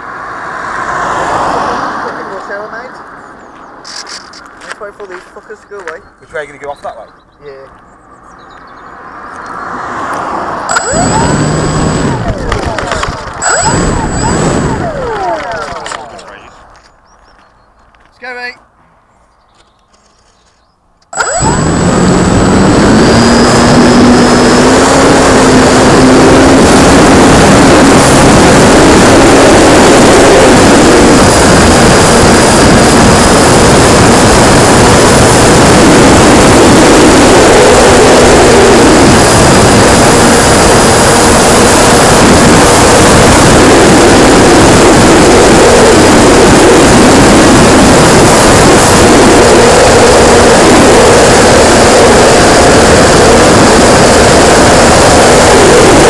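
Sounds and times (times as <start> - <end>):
model plane motor and propeller: 10.7 - 16.3, 21.2 - 56.0.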